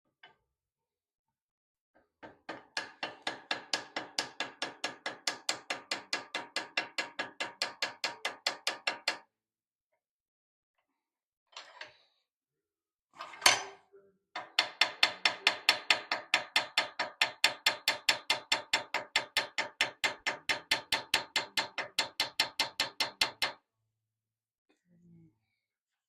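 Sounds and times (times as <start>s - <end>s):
hammer tapping on metal: 2.2s - 9.2s, 14.4s - 23.6s.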